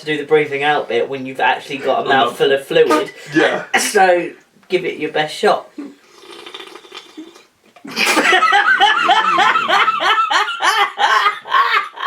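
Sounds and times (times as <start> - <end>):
wet gurgling snore: 6.0 - 7.5
man laughing loudly: 7.9 - 12.0.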